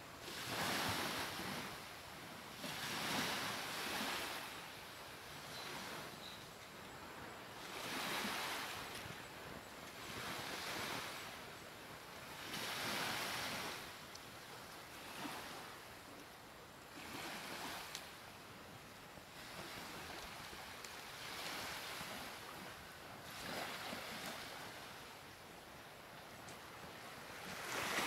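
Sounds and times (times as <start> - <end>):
ocean surf breaking: 27.2 - 28.0.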